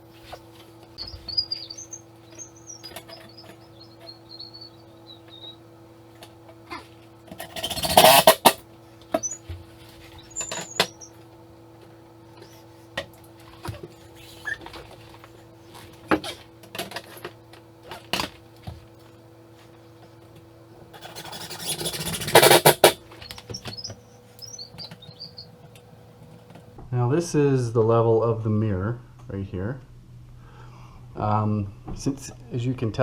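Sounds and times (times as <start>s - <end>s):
steady low hum: 0.0s - 33.0s
loud rasping noise: 6.7s - 9.4s, 20.9s - 23.9s.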